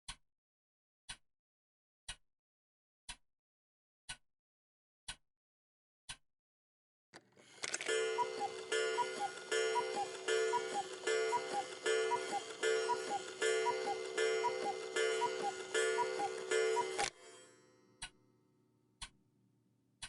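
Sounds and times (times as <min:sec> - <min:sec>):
cuckoo clock calling: 0:07.6 - 0:17.4.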